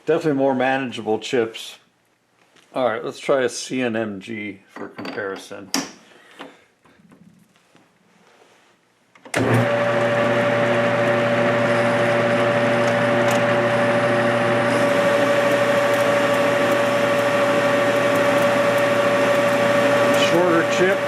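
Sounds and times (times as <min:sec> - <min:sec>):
metal lathe running: 0:09.4 - 0:21.0.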